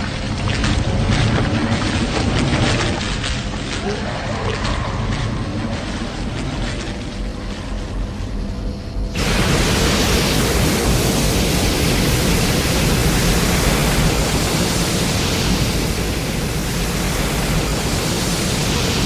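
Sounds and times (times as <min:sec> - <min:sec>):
low rumble: 0:00.0 - 0:17.9
loud rushing noise: 0:09.0 - 0:19.0.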